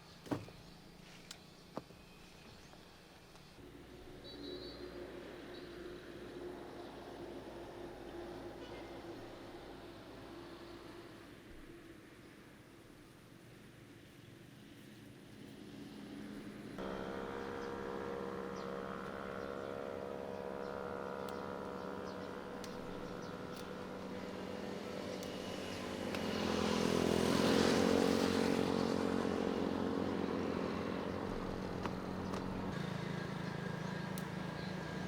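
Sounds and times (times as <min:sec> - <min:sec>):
small engine running: 0:16.0 - 0:35.0.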